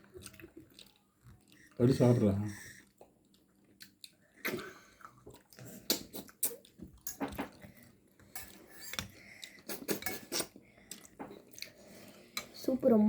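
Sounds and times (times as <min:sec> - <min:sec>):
spoons clinking against bowls: 0:09.7 - 0:10.5.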